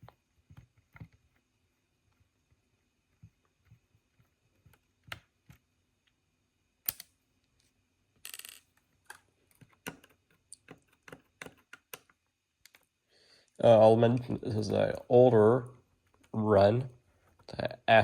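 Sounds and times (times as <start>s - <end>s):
small plastic parts clicking: 6.8s - 12.9s.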